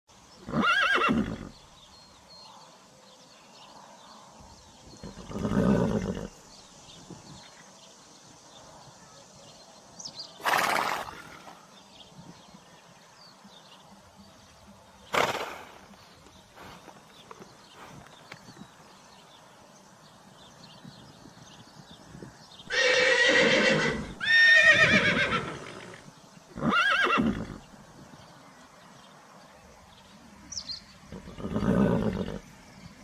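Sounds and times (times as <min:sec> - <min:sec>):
horse neighing: 0:00.4 - 0:01.5, 0:05.0 - 0:06.4, 0:22.7 - 0:26.0, 0:26.6 - 0:27.6, 0:31.1 - 0:32.5.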